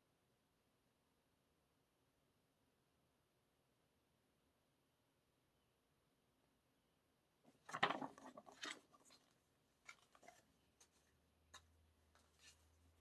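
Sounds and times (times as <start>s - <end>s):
paper rustling and crinkling: 7.5s - 11.2s, 12.1s - 12.9s.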